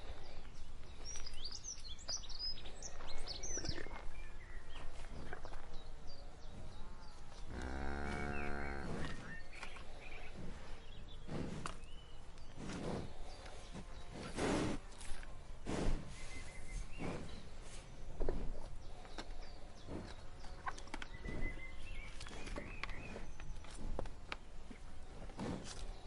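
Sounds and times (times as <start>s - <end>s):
birds chirping: 0.0s - 26.0s
outdoor noise: 0.0s - 26.0s
cow mooing: 7.5s - 9.1s
cow snorting: 7.5s - 12.0s, 12.6s - 14.9s.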